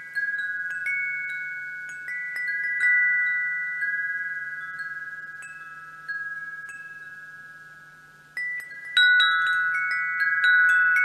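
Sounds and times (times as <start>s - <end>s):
wind chimes ringing: 0.0s - 11.0s.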